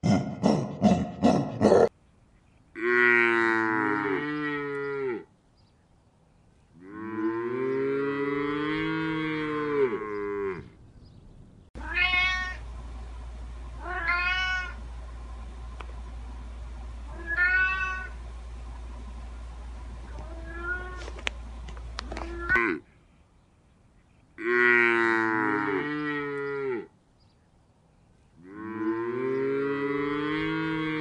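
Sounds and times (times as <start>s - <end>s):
cow mooing: 2.8s - 5.3s, 6.8s - 10.8s, 22.2s - 22.8s, 24.4s - 26.9s, 28.4s - 31.0s
steady low hum: 3.8s - 31.0s
cat meowing: 11.8s - 12.6s, 13.8s - 14.8s, 17.1s - 18.1s, 20.2s - 21.0s.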